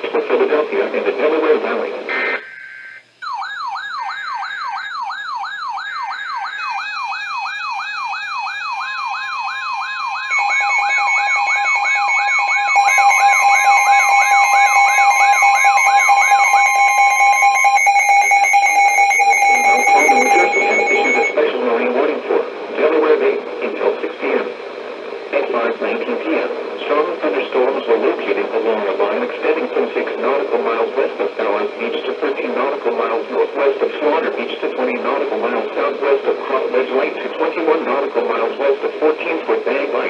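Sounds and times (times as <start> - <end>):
siren-like sweeping tone: 3.2 - 21.4
steady alert tones: 5.7 - 21.9
high beeping tones: 8.3 - 21.5.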